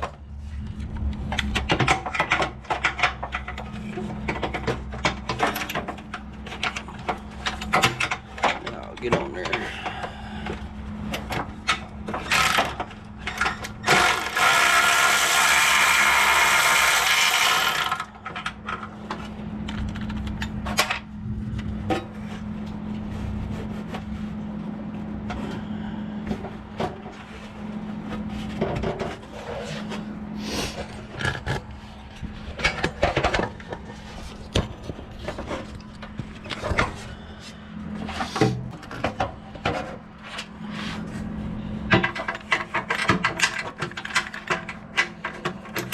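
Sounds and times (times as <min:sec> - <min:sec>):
steady low hum: 0:00.0 - 0:17.1, 0:17.8 - 0:45.9
power tool running: 0:13.8 - 0:18.2.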